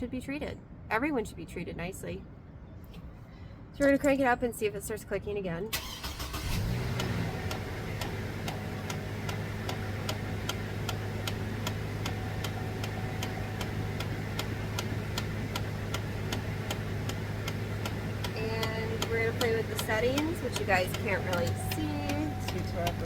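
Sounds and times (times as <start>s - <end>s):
car engine idling: 5.8s - 23.0s
clicking under dashboard: 6.8s - 23.0s.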